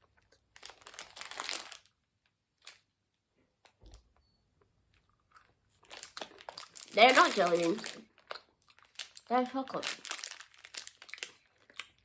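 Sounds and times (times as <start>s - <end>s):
plastic packet crinkling: 0.5s - 1.9s, 5.8s - 12.0s.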